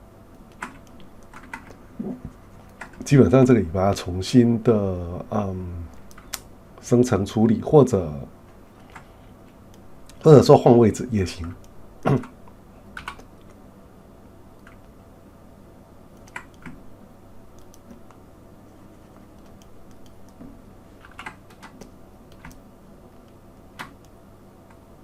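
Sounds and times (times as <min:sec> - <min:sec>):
faint steady hum: 0:00.0 - 0:25.0
keyboard and mouse clicks: 0:00.4 - 0:03.1, 0:05.9 - 0:06.5, 0:13.0 - 0:13.6, 0:14.6 - 0:14.9, 0:16.2 - 0:16.8, 0:17.6 - 0:18.2, 0:19.2 - 0:24.8.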